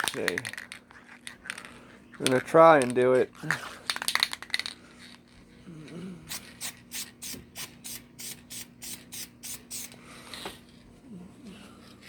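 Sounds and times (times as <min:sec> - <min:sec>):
aerosol spray paint hissing: 0:06.3 - 0:09.9.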